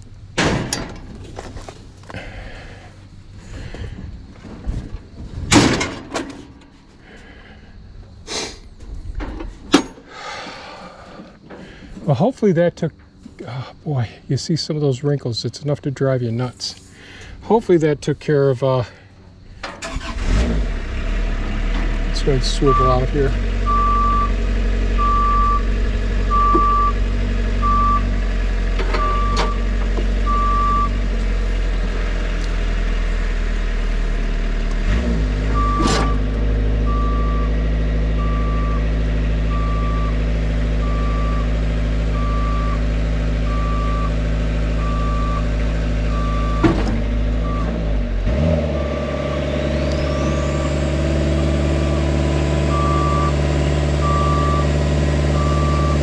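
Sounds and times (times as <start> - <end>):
boom lift engine running: 19.7 - 56.0
motion alarm beeping: 22.7 - 24.4, 25.0 - 25.7, 26.3 - 27.0, 27.6 - 28.1, 29.0 - 29.6, 30.2 - 31.0, 35.6 - 36.2, 36.9 - 37.5, 38.2 - 38.8, 42.2 - 42.8, 44.8 - 45.4, 52.7 - 53.4, 54.0 - 54.7, 55.4 - 56.0.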